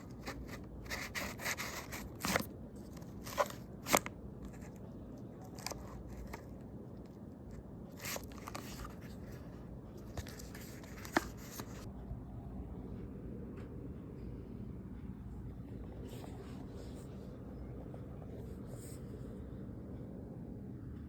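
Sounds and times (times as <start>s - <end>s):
cardboard scraping rustles: 0.0s - 4.7s, 8.0s - 9.4s, 10.0s - 11.9s.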